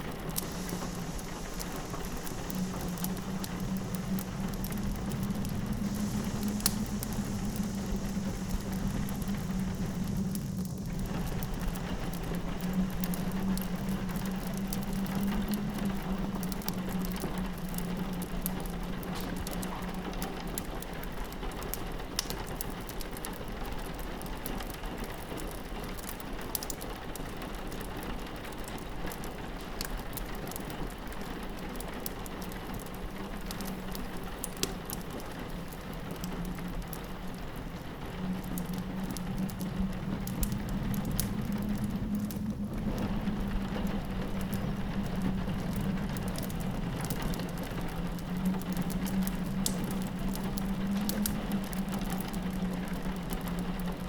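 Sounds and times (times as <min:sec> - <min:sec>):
low steady hum: 0:00.0 - 0:21.5, 0:33.0 - 0:54.0
rain pattering on a window: 0:00.0 - 0:54.0
wood fire crackling: 0:00.0 - 0:54.0.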